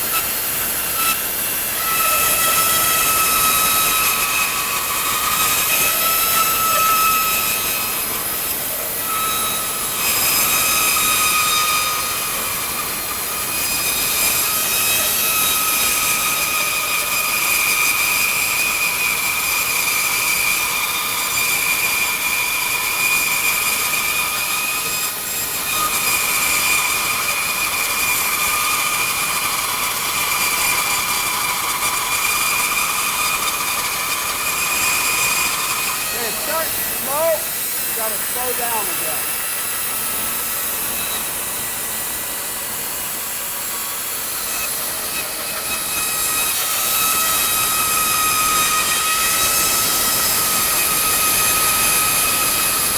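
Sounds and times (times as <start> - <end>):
bandsaw cutting wood: 31.9 - 52.9.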